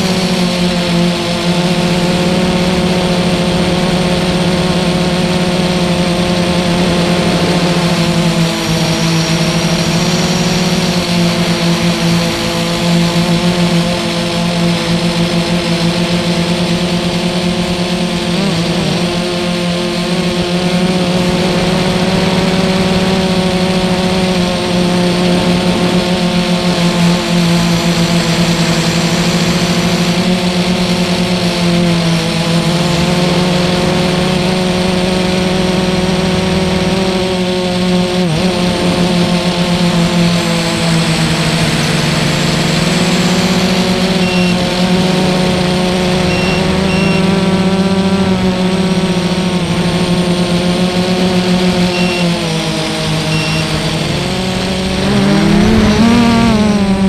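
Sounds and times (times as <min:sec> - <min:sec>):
quadcopter motors whining: 0:00.0 - 0:57.0.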